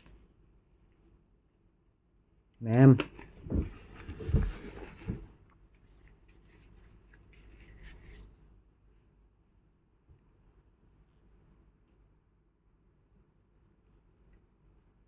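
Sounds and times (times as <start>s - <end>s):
soft rustling and rubbing: 3.1s - 8.6s.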